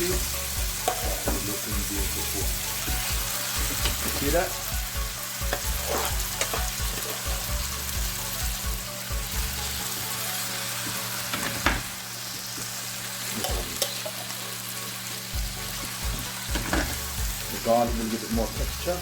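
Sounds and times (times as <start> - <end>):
food sizzling in a pan: 0.0 - 19.0.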